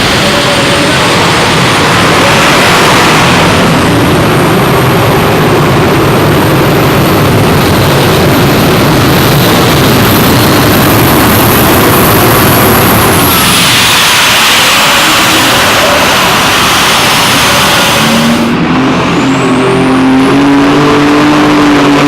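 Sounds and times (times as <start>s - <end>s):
tractor engine running flat out: 0.0s - 22.0s
thin high whine: 6.6s - 20.5s.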